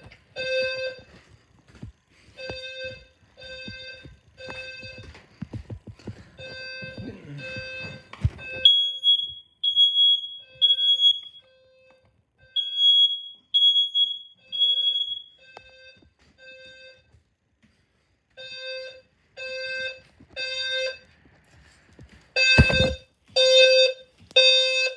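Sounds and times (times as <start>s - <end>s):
low buzzy alarm tone: 0.0s - 11.1s, 22.4s - 24.9s
smoke alarm beeping: 0.0s - 17.2s, 18.3s - 21.1s, 22.4s - 24.9s.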